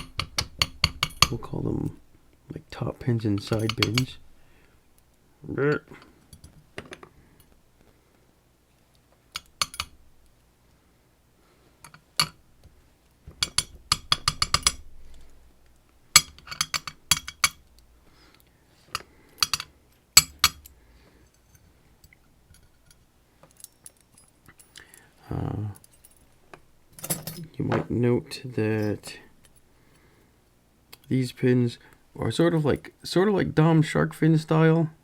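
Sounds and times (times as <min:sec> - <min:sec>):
small metal parts clinking: 0:03.4 - 0:04.3, 0:16.2 - 0:17.8, 0:18.9 - 0:27.6.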